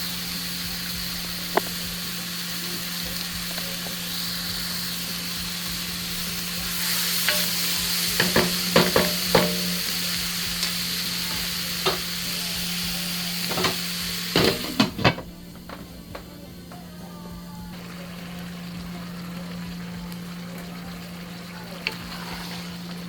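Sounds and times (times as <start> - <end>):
food sizzling in a pot: 0.0 - 23.0
utensil scraping against a pot: 5.8 - 12.8, 21.8 - 22.9.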